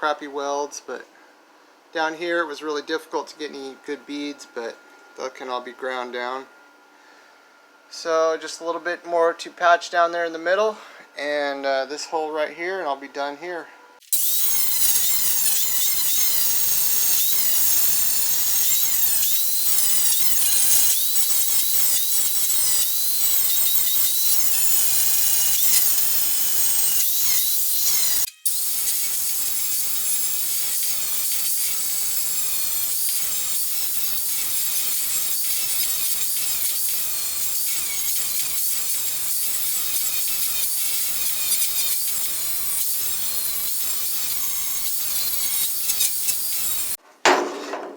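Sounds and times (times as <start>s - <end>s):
angle grinder whine on metal: 14.0s - 47.9s.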